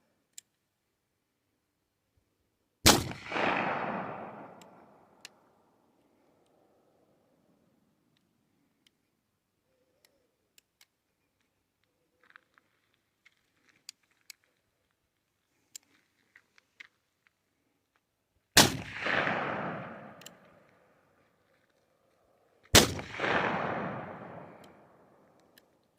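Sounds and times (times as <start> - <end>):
gunshot echo: 2.8 - 5.0, 18.6 - 20.6, 22.7 - 25.1
revolver gunshots: 2.8 - 5.0, 18.6 - 20.6, 22.7 - 25.1
faint clicks: 9.7 - 18.1.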